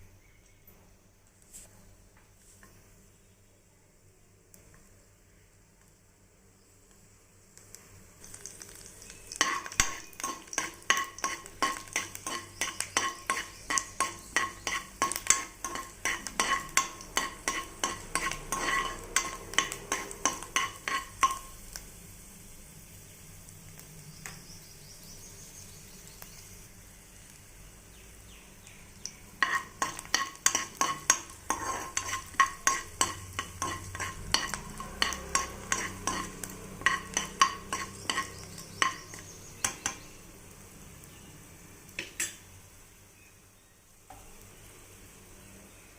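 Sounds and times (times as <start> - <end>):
potatoes sizzling in a pan: 4.6 - 45.9
utensil stirring and scraping: 8.2 - 21.5, 29.1 - 40.1.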